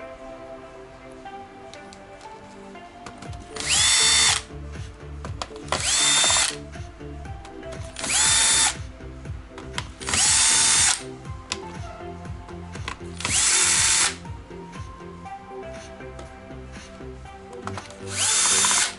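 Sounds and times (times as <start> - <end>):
electric screwdriver whining: 3.5 - 4.5, 5.6 - 6.6, 8.0 - 8.8, 10.0 - 11.1, 13.2 - 14.2, 17.6 - 18.9.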